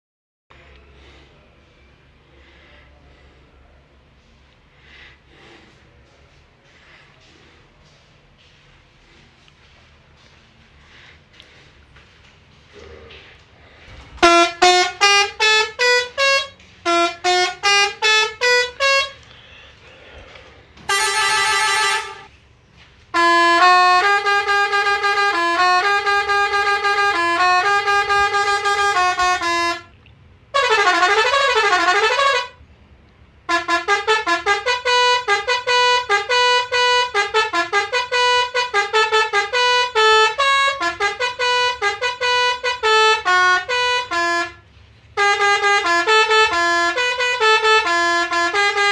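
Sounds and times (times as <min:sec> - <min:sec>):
musical horn melodies: 0:12.7 - 0:22.3, 0:23.1 - 0:32.6, 0:33.4 - 0:48.9.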